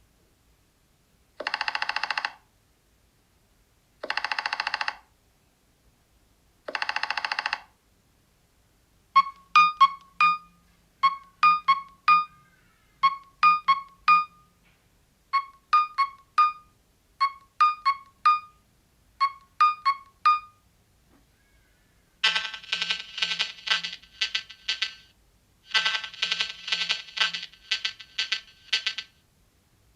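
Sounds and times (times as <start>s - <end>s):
electronic piano ringtone: 9.2s - 12.4s, 22.2s - 25.0s, 25.7s - 29.1s
buzzy rattling tone: 22.2s - 25.1s, 25.7s - 29.2s.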